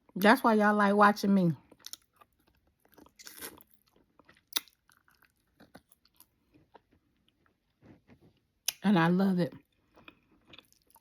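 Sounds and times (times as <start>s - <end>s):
person chewing and lip smacking: 1.7s - 7.6s, 8.4s - 8.8s, 9.6s - 11.0s.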